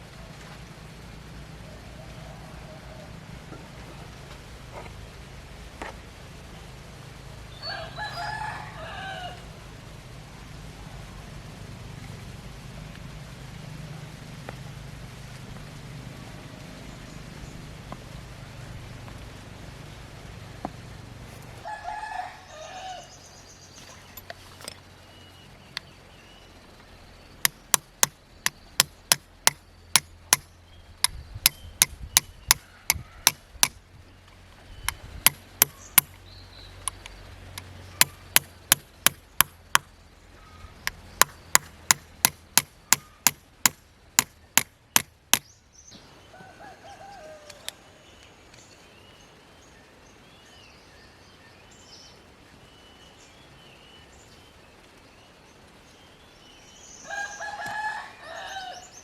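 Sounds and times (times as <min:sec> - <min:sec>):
sharp hammer strikes: 0:27.5 - 0:33.8, 0:35.3 - 0:36.2, 0:38.0 - 0:39.9, 0:40.9 - 0:45.5.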